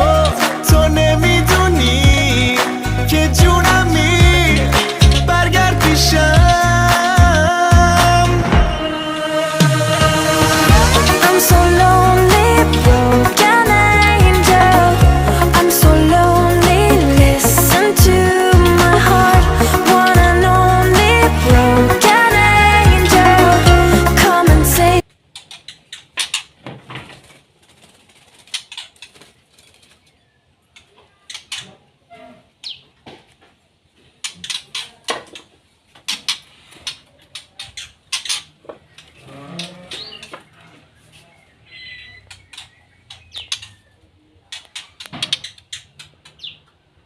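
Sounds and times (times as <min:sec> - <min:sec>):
song playing: 0:00.0 - 0:25.0
birds tapping in cages: 0:03.1 - 0:08.2, 0:34.2 - 0:41.2, 0:41.8 - 0:46.8
wings fluttering: 0:03.6 - 0:07.4, 0:25.2 - 0:31.8
bird chirps: 0:37.6 - 0:46.7.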